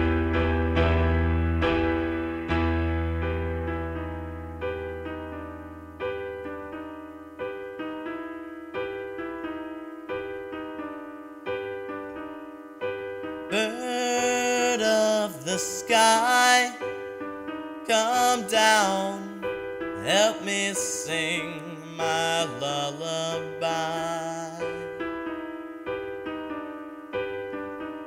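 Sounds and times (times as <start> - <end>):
soft piano music: 0.0 - 28.0
person singing: 13.5 - 17.1, 17.8 - 25.0.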